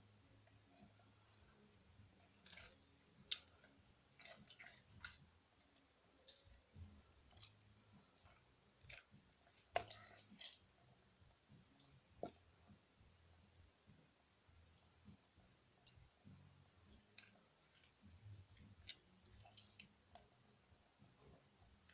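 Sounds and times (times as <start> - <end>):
faint clicks and soft taps: 13.8 - 21.9.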